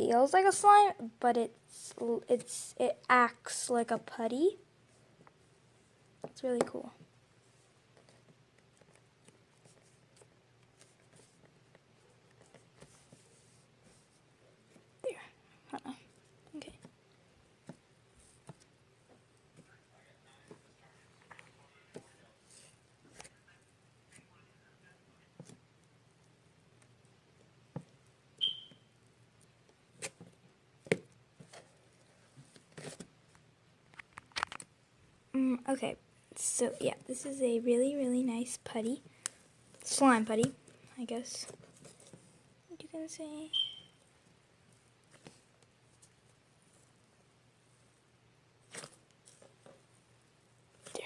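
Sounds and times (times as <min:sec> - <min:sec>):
slime squeak: 0:28.4 - 0:28.9, 0:43.5 - 0:44.0.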